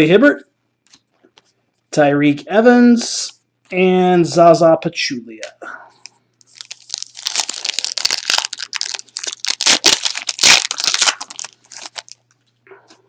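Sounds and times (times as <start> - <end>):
wrapper being torn and crinkled: 6.4 - 12.3.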